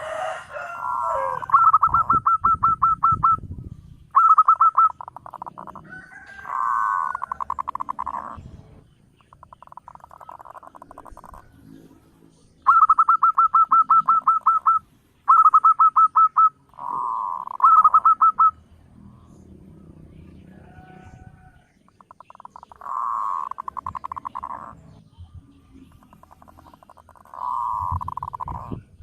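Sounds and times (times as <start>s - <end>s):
dove rapid staccato cooing: 0.0s - 3.5s, 4.1s - 8.4s, 9.2s - 11.5s, 12.6s - 18.6s, 21.9s - 24.9s, 25.9s - 29.0s
soft buzzing bird trill: 20.5s - 29.0s.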